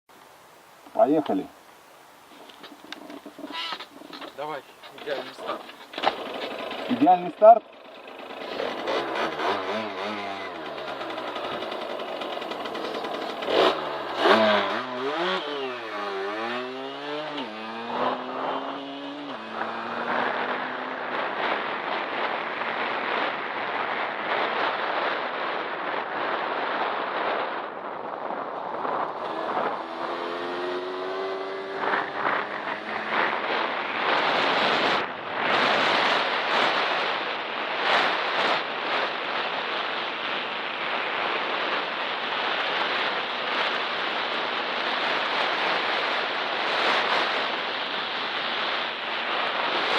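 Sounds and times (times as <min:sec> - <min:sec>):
dirt bike engine revving: 0:02.6 - 0:22.3, 0:28.9 - 0:37.1
loud rushing noise: 0:03.3 - 0:25.3, 0:28.3 - 0:40.0.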